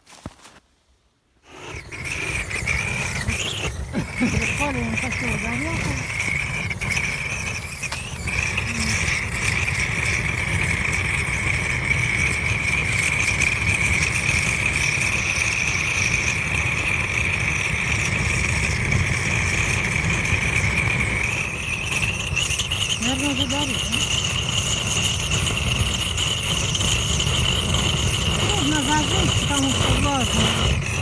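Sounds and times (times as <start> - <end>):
gas torch flame rumbling: 1.4 - 31.0.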